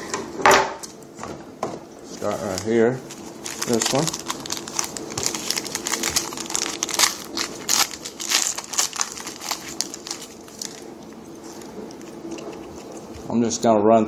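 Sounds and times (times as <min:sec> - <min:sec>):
wrapper crinkling: 0:02.1 - 0:13.3.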